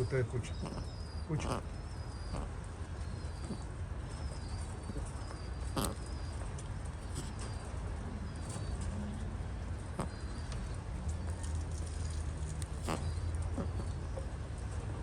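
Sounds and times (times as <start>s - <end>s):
small bird chirping: 0.0s - 6.4s.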